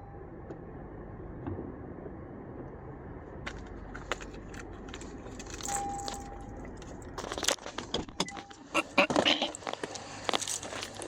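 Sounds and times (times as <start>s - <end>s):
car engine idling: 0.0s - 11.0s
keys rattling and clicking: 4.0s - 11.0s.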